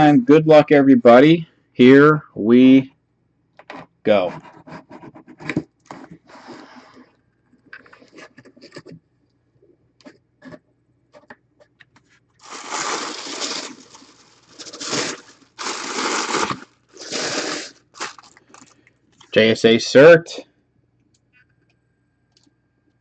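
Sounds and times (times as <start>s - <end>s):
plastic crinkling: 12.4s - 19.3s.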